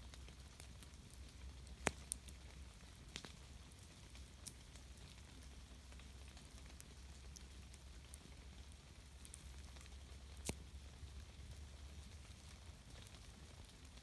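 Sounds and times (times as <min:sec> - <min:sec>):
soft steady hiss: 0:00.0 - 0:14.0
sharp pops and ticks: 0:01.6 - 0:02.4, 0:09.2 - 0:10.6.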